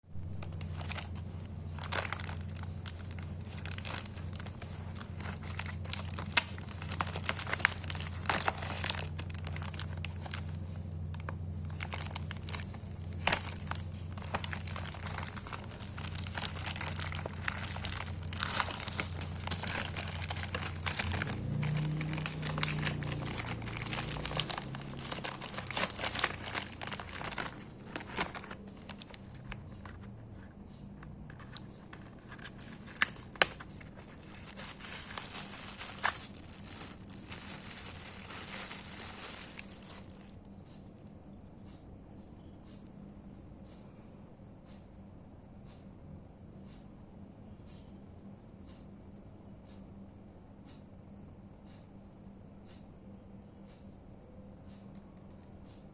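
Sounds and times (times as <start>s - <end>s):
packaging crinkling and tearing: 0.2s - 30.1s, 31.3s - 40.4s.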